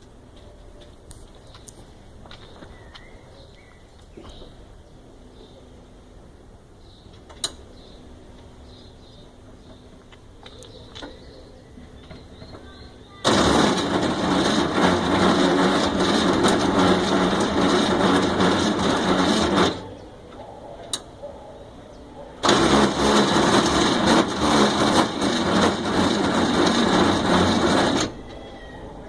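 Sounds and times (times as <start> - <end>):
van engine running: 13.3 - 19.9, 22.4 - 28.2
fast ticking rattle in engine: 22.4 - 28.2.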